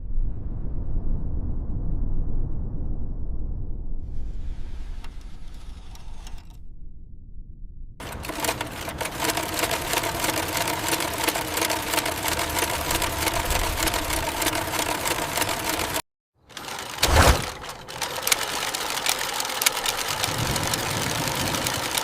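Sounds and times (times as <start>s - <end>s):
low rumble: 0.0s - 8.0s
sewing machine running: 4.4s - 6.5s, 8.0s - 22.0s.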